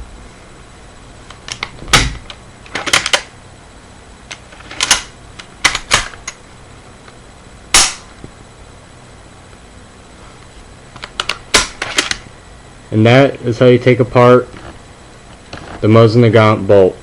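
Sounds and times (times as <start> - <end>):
rifle dry-fire clack: 7.7 - 8.1.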